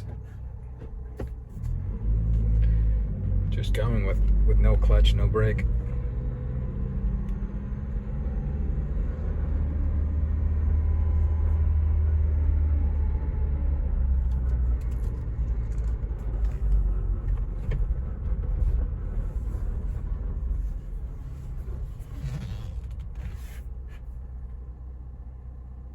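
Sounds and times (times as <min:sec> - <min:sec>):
car driving with road rumble: 0:00.0 - 0:25.9.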